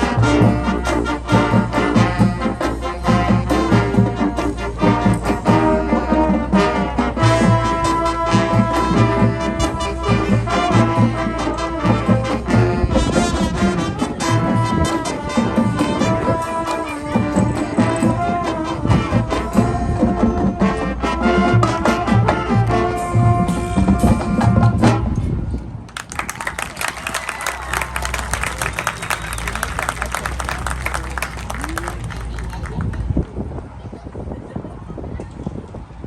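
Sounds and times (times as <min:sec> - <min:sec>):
marching band playing: 0:26.0 - 0:32.8.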